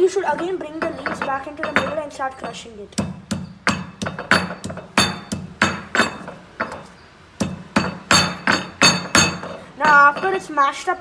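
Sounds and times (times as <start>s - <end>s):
pestle knocking stone mortar: 3.0s - 10.5s.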